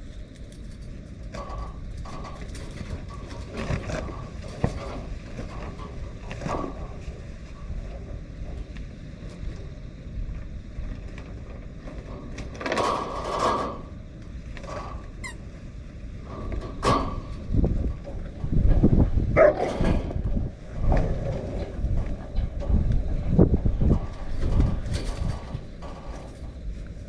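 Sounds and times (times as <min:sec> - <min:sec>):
sharp knocks and rattles: 0:00.0 - 0:09.6, 0:10.2 - 0:15.3, 0:16.2 - 0:27.0
wind buffeting microphone: 0:00.0 - 0:27.0.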